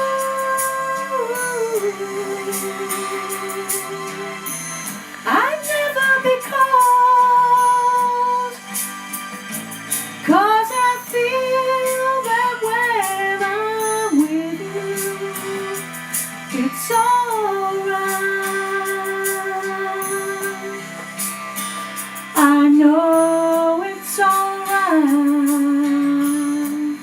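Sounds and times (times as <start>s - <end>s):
woman singing long notes: 0.0s - 4.6s, 10.3s - 15.9s, 16.5s - 21.2s, 22.4s - 27.0s
soft instrumental backing: 0.0s - 27.0s.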